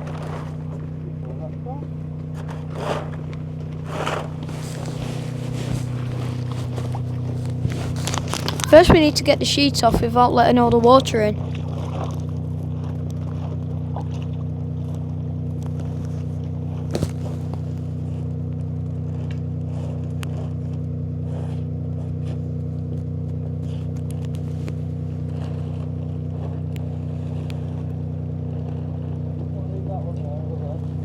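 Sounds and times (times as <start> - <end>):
farm vehicle engine running: 0.0 - 31.0
faint scraping and rustling: 2.3 - 10.9.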